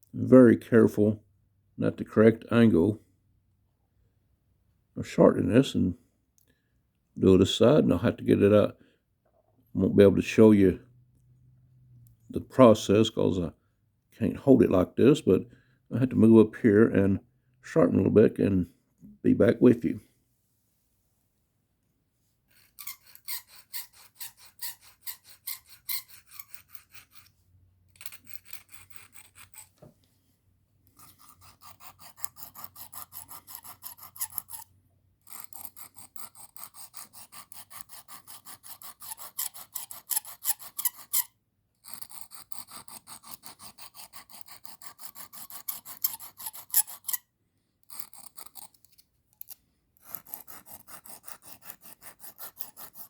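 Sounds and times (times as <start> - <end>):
knife blade scraping on sharpening stone: 22.5 - 27.3, 31.0 - 34.7, 35.3 - 47.3, 47.9 - 53.0.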